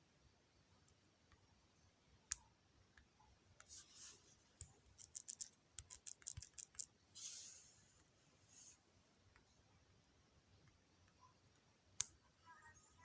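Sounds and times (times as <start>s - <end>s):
scratchy rubs: 3.6s - 4.4s, 5.0s - 8.8s.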